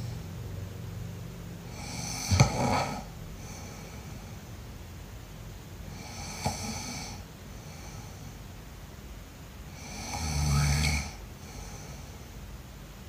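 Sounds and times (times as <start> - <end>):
person snoring: 1.7 - 4.3, 5.9 - 8.1, 9.7 - 12.1.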